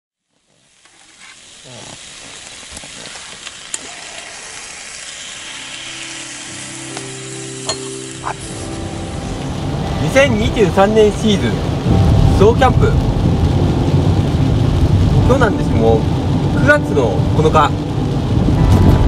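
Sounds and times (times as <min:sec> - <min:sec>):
rain hiss: 0:00.2 - 0:19.0
low steady tones: 0:04.1 - 0:19.0.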